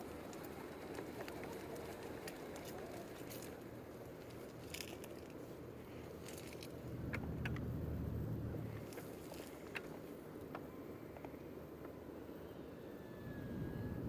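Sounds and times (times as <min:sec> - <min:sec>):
low rumble: 0:06.8 - 0:09.0.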